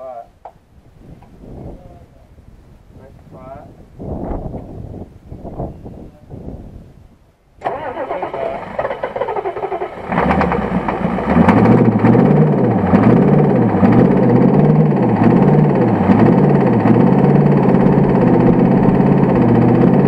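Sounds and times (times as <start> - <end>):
diesel engine running loudly: 7.6 - 20.0
starter cranking: 7.6 - 20.0.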